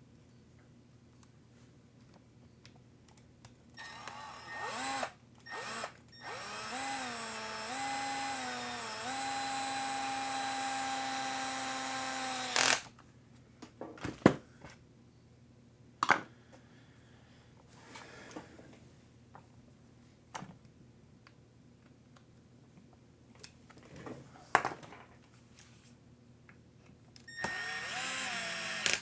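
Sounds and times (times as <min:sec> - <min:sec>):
cordless drill whirring: 0:03.8 - 0:12.9, 0:27.3 - 0:29.0.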